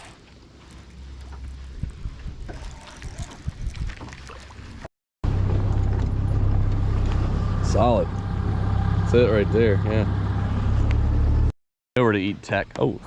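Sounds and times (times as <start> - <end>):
wind on microphone: 1.6 - 4.3
boat motor running: 5.2 - 11.5
low hum: 5.2 - 11.5.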